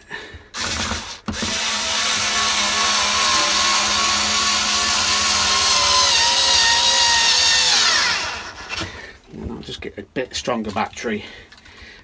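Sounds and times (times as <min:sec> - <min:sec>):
cordless drill motor under load: 0:00.6 - 0:09.0.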